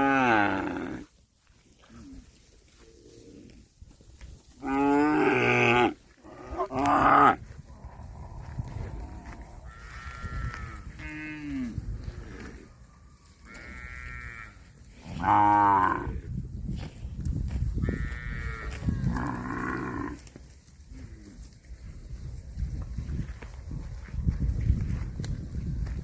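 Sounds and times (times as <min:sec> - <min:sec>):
cattle mooing: 0:00.0 - 0:01.1, 0:04.6 - 0:07.4, 0:13.4 - 0:16.2, 0:17.9 - 0:20.2.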